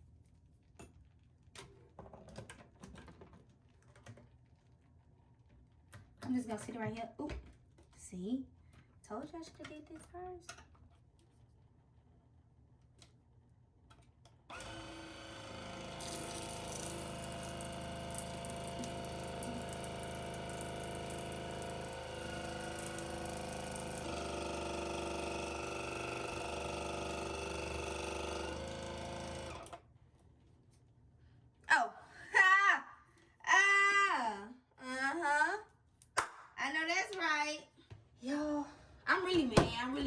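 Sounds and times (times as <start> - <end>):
water flosser pump motor running: 14.5 - 29.8.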